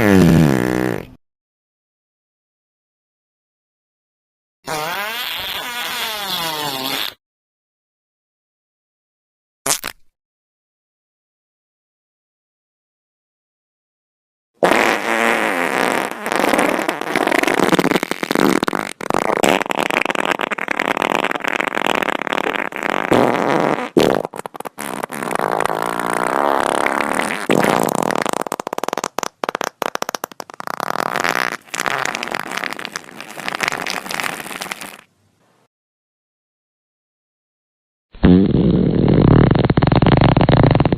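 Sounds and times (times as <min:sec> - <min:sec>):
buzzy flapping farts: 0:04.7 - 0:07.2, 0:14.6 - 0:35.1, 0:38.2 - 0:40.9.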